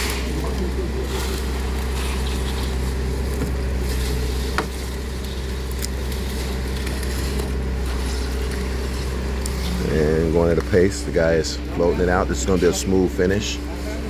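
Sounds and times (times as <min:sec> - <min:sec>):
heavy engine droning: 0:00.0 - 0:14.0.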